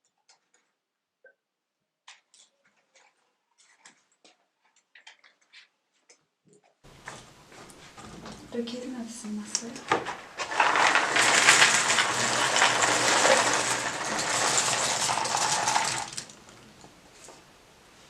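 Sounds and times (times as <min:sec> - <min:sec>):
small hard objects rattling: 0:09.8 - 0:16.8.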